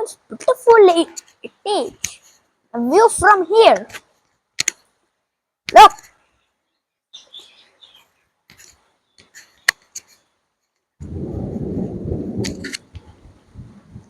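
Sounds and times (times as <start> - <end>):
sharp clicks: 4.6 - 4.9, 8.5 - 10.1
faint high bird chirps: 6.3 - 8.2
low rumbling noise: 11.0 - 14.0.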